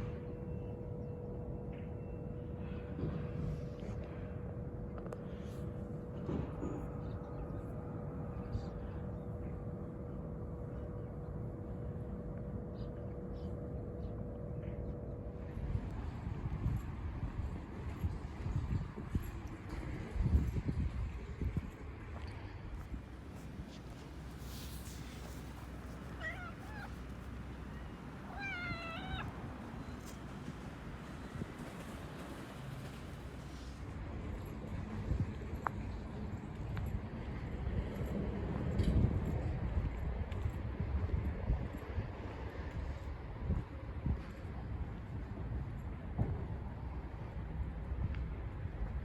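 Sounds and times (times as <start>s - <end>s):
outdoor background rumble: 0.0s - 49.0s
cat meowing: 26.1s - 27.0s, 28.2s - 29.3s.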